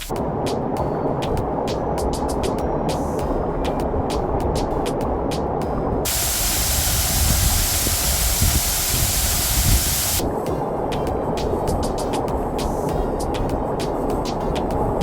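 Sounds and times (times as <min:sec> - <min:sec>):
waterfall rushing: 0:06.1 - 0:10.2
background music: 0:10.2 - 0:15.0.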